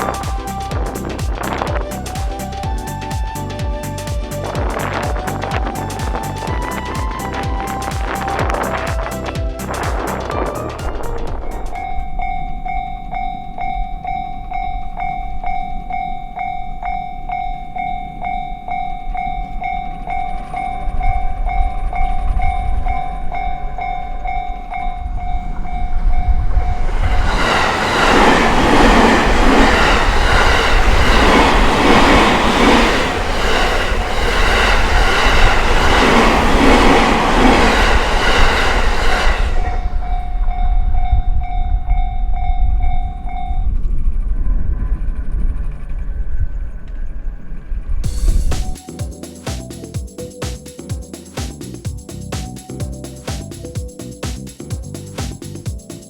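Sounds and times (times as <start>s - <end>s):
train wheel and rail noise: 0.0s - 56.0s
level crossing warning bell: 4.7s - 43.9s.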